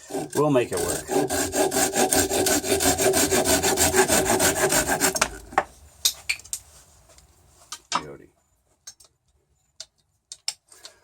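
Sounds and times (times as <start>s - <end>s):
hand saw cutting wood: 0.0s - 5.7s.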